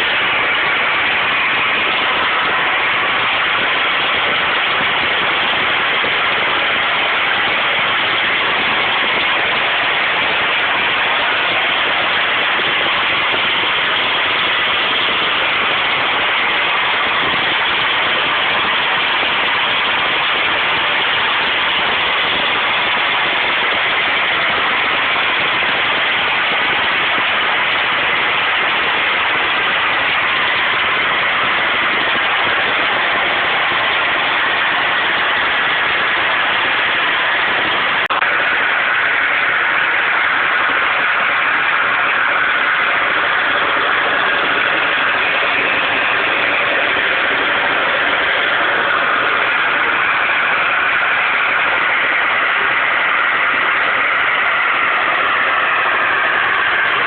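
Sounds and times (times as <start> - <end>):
gas escaping with loud rushing: 0.0 - 57.0.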